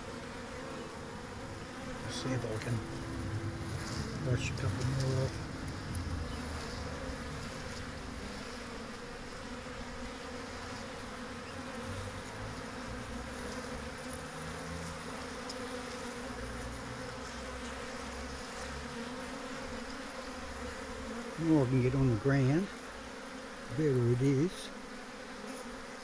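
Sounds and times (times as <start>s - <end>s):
bees buzzing: 0.0s - 26.0s.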